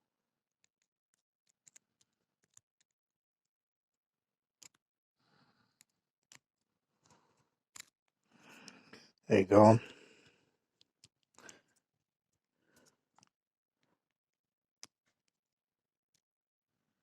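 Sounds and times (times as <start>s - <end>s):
faint plastic clips clicking: 4.6s - 4.8s, 12.7s - 13.4s.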